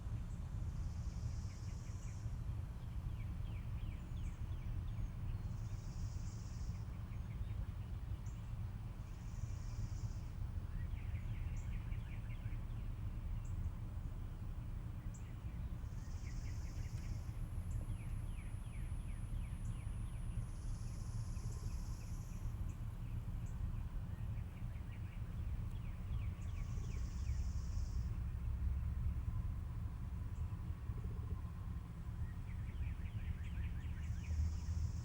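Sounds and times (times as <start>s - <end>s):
low rumble: 0.0s - 35.0s
birds chirping: 14.9s - 28.2s.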